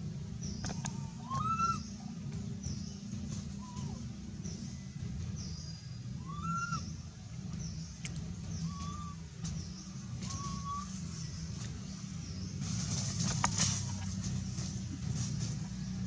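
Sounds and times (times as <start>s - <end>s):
low rumble: 0.0s - 16.0s
baby monkey coo calls: 0.6s - 2.1s, 3.5s - 4.0s, 6.2s - 6.9s, 8.6s - 9.2s, 10.2s - 11.0s.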